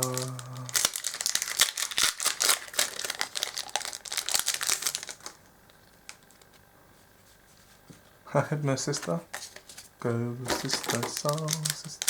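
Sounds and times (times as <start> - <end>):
foil wrapper crinkling: 0.0 - 6.6, 10.5 - 12.0.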